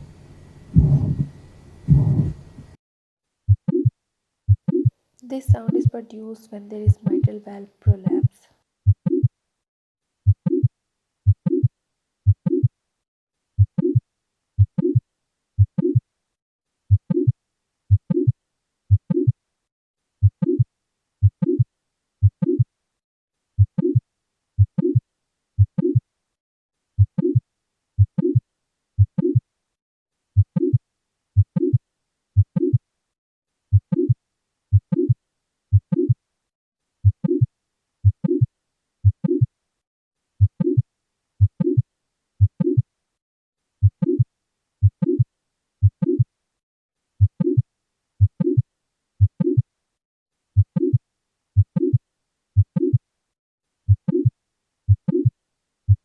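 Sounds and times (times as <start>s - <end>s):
heart murmur: 0.7s - 2.4s, 4.5s - 4.9s
heartbeat through stethoscope: 0.7s - 2.7s, 3.5s - 3.9s, 4.5s - 4.9s, 7.9s - 9.3s, 10.3s - 10.7s, 11.3s - 11.7s, 12.3s - 12.7s, 13.6s - 14.0s, 14.6s - 15.0s, 15.6s - 16.0s, 18.9s - 19.3s, 20.2s - 20.6s, 31.4s - 31.8s, 32.4s - 32.8s, 33.7s - 36.2s, 37.0s - 39.5s, 40.4s - 40.8s, 41.4s - 41.8s, 42.4s - 42.8s, 43.8s - 44.2s, 45.8s - 46.2s, 47.2s - 47.6s, 48.2s - 48.6s, 49.2s - 49.6s, 50.6s - 51.0s, 51.6s - 52.0s, 52.6s - 53.0s, 53.9s - 54.3s, 54.9s - 55.3s.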